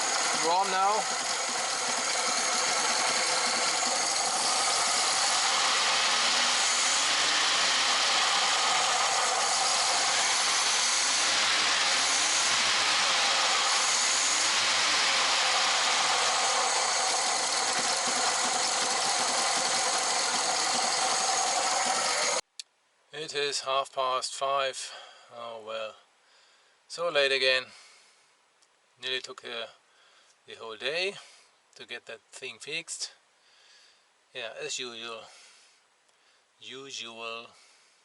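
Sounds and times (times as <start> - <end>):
petrol engine idling with rattle: 0.0 - 22.4.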